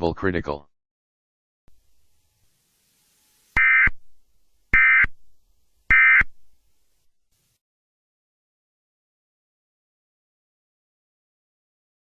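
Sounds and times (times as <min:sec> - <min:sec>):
buzzy warbling data bursts: 0:01.7 - 0:05.2, 0:05.8 - 0:06.4.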